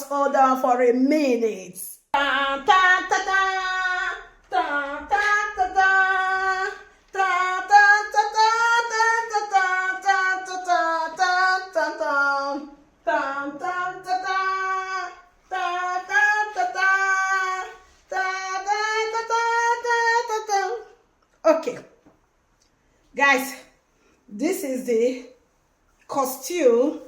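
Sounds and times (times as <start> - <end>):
high voice singing unaccompanied: 0.0 - 0.8, 2.1 - 21.8.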